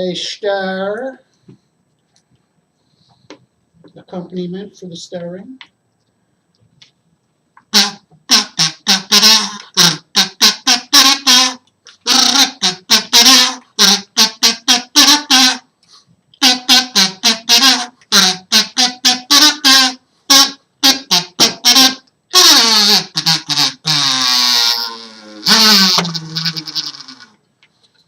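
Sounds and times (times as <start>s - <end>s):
kazoo playing a tune: 7.7s - 27.4s.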